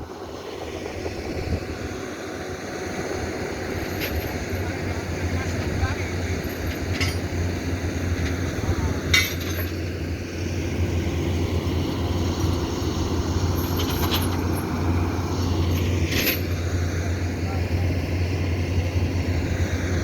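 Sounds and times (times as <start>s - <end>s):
excavator diesel engine running: 0.0s - 20.0s
sharp metallic clanks: 9.1s - 9.8s.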